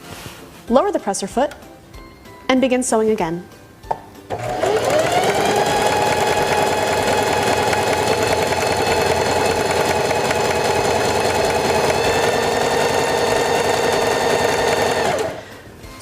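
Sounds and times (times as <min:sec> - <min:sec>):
sewing machine running: 0:04.3 - 0:15.5.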